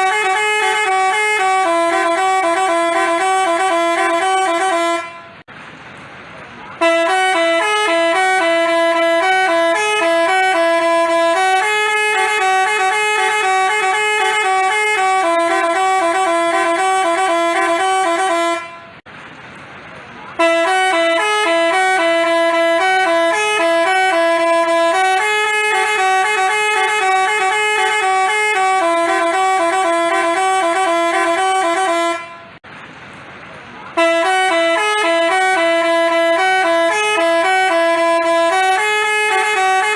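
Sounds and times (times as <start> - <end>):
bus horn playing melody: 0.0 - 5.5, 6.8 - 19.1, 20.3 - 32.6, 33.9 - 39.9.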